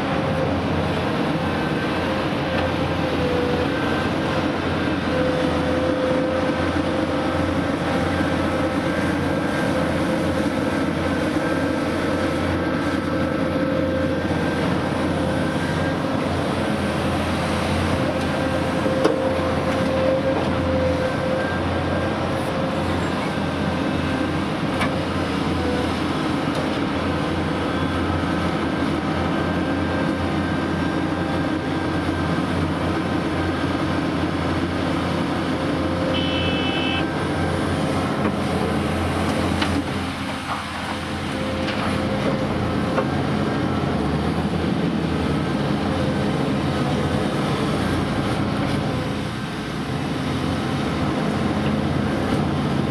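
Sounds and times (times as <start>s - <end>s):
heavy diesel engines running: 0.0s - 52.9s
short high beep: 36.2s - 37.1s.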